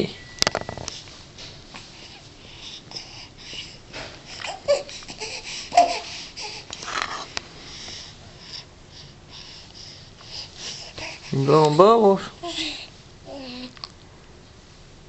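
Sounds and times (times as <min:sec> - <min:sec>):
soft breathy noises: 0:00.8 - 0:13.9
baby babbling: 0:04.4 - 0:06.6, 0:12.4 - 0:13.8.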